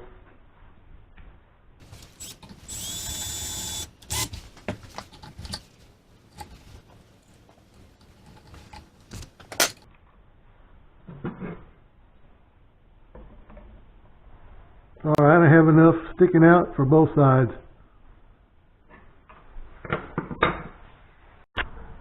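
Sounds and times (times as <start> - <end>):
power drill running: 1.9 - 4.3.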